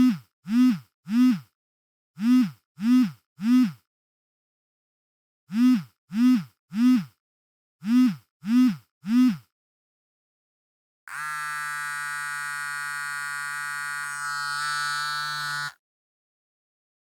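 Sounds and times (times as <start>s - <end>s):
mobile phone vibrating buzz: 0.0s - 1.6s, 2.2s - 3.9s, 5.5s - 7.2s, 7.8s - 9.5s, 11.1s - 15.8s.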